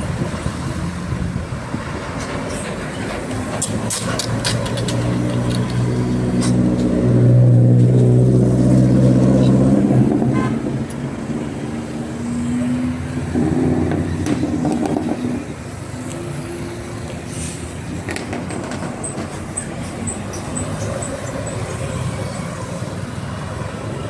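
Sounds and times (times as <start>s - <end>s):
bus engine noise: 0.0s - 24.0s
bus horn melody: 10.1s - 10.8s.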